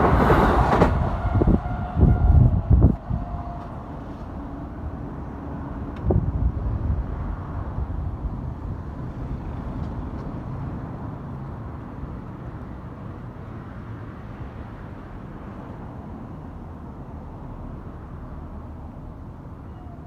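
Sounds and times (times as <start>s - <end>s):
electric train rumble: 0.0s - 13.1s.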